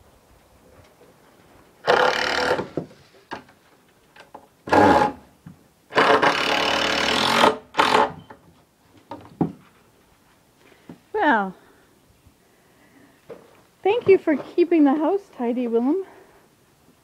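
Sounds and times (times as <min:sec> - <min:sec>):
power tool bursts: 0:01.8 - 0:02.8, 0:04.7 - 0:05.2, 0:05.9 - 0:08.2.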